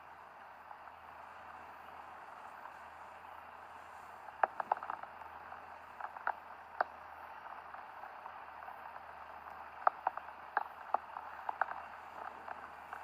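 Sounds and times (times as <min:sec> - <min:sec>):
steady rain hiss: 0:00.0 - 0:13.0
raindrops tapping close by: 0:04.3 - 0:13.0.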